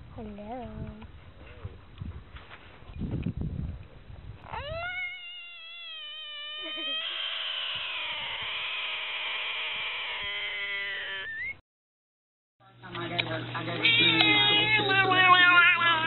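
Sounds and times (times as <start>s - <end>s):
animal long drawn-out cry: 4.5s - 11.5s.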